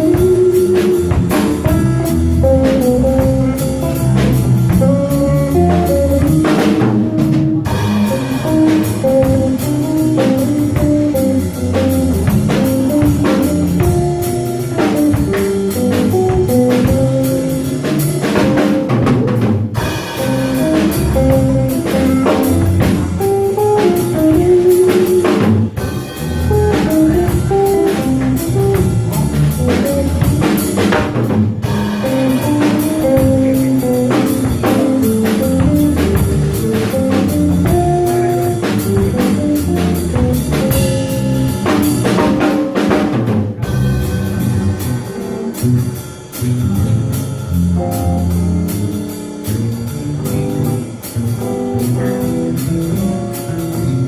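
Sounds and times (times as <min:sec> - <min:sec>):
jazz band playing: 0:00.0 - 0:54.0
drum kit cymbal strokes: 0:19.8 - 0:54.0.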